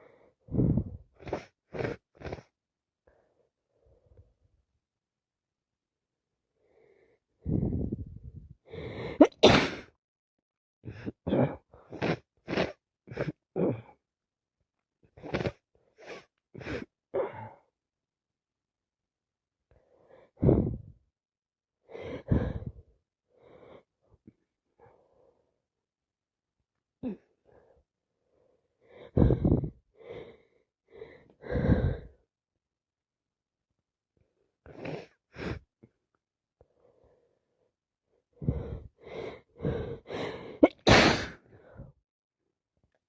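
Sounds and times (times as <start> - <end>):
person sneezing: 9.2 - 9.9, 40.6 - 41.4.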